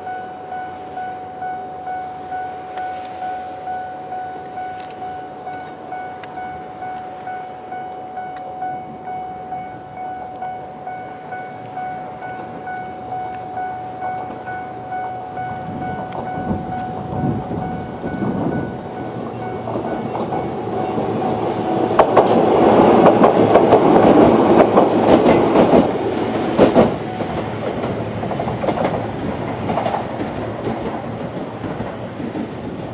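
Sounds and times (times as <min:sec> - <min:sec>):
pulsing electronic crossing alarm: 0:00.0 - 0:32.4
train wheels clattering over rail joints: 0:10.9 - 0:32.9.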